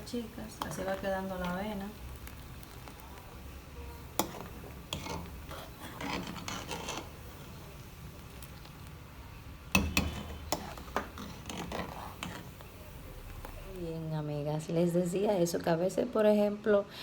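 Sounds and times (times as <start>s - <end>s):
utensil scraping: 4.2s - 7.7s, 9.8s - 12.7s.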